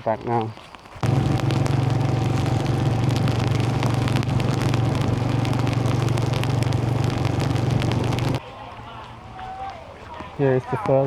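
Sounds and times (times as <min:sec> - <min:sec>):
light crackle: 0:00.0 - 0:08.4
engine running steadily: 0:01.0 - 0:08.4.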